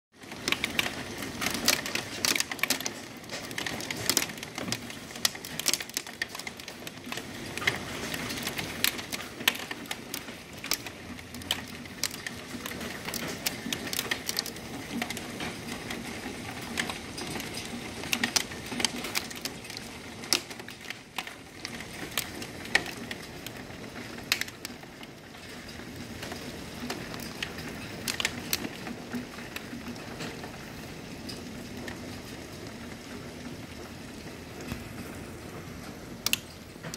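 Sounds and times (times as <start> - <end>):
hailstones striking hard surface: 0.2 - 36.9.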